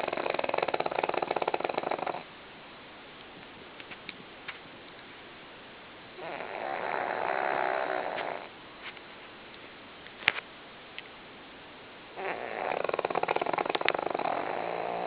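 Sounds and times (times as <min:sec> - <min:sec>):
dog snoring: 0:00.0 - 0:02.3, 0:06.2 - 0:08.5, 0:12.2 - 0:15.0
faint clicks: 0:13.2 - 0:14.1.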